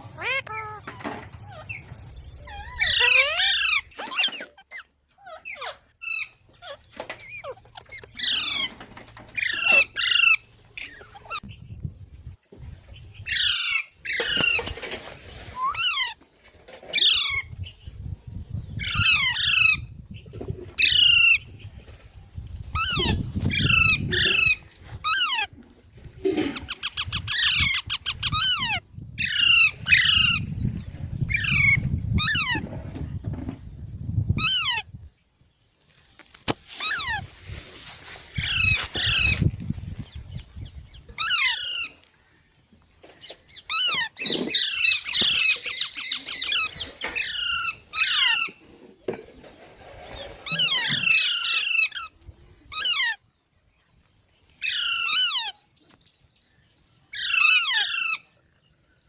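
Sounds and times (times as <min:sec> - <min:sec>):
parrots squawking: 0:00.0 - 0:08.8, 0:09.4 - 0:11.4, 0:22.8 - 0:25.5, 0:36.8 - 0:37.2, 0:38.4 - 0:39.4, 0:41.2 - 0:42.0, 0:43.5 - 0:48.6, 0:50.5 - 0:53.2, 0:54.6 - 0:55.6, 0:57.1 - 0:58.3.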